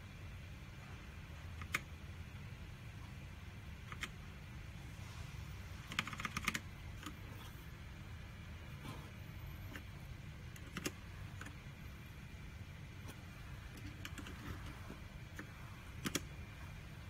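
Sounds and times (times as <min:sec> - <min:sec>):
mechanical keyboard key clacks: 0:05.9 - 0:07.2, 0:10.5 - 0:11.6, 0:13.7 - 0:14.5, 0:15.4 - 0:16.3.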